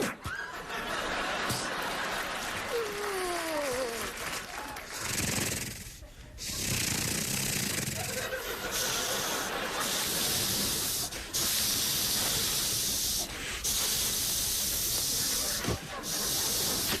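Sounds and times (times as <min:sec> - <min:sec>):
man hissing into microphone: 0:09.8 - 0:17.0.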